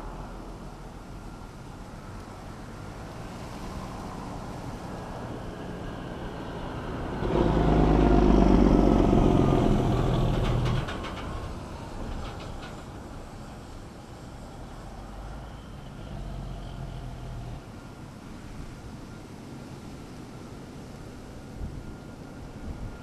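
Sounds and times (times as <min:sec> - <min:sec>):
road vehicle passing by: 0:00.0 - 0:18.4.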